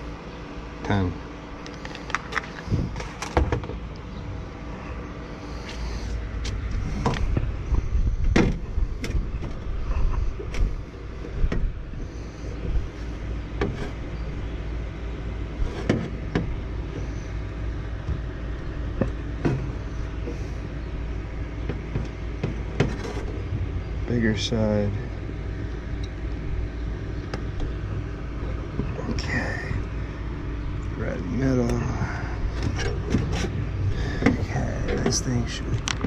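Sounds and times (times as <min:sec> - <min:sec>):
steady low rumble: 0:00.0 - 0:36.0.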